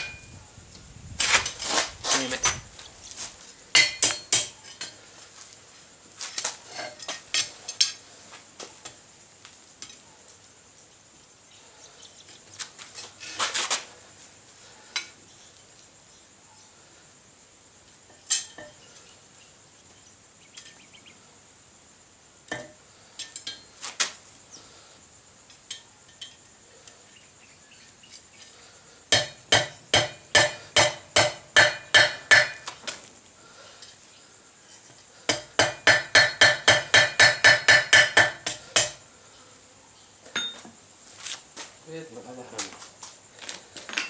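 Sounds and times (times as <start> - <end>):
hammer striking steel: 3.8 - 4.6, 29.1 - 32.7, 35.3 - 39.0.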